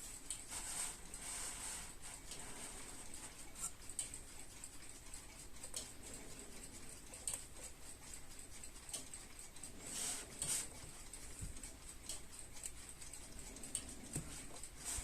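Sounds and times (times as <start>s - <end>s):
faint steady hiss: 0.0s - 15.0s.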